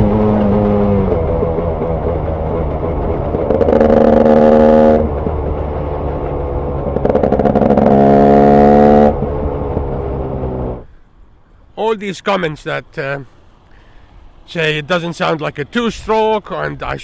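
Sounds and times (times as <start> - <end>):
dirt bike engine revving: 0.0 - 10.8.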